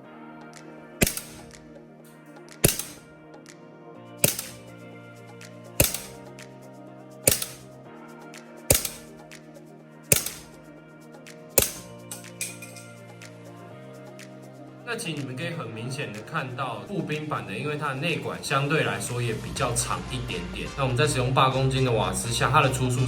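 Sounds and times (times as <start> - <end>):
background music: 0.0 - 23.0
metallic clip clinks: 1.0 - 1.5, 2.6 - 3.0, 4.2 - 4.7, 5.8 - 6.2, 7.2 - 7.7, 8.7 - 9.1, 10.1 - 10.6, 11.6 - 13.0
airsoft rifle shots: 1.0 - 1.6, 2.6 - 3.0, 4.2 - 4.6, 5.8 - 6.2, 7.2 - 7.7, 8.7 - 9.1, 10.1 - 10.6, 11.6 - 12.6.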